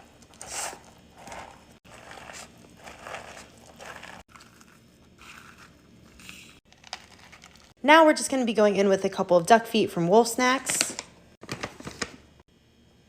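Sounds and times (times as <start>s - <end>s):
dog food stirred in a bowl: 0.0s - 6.4s.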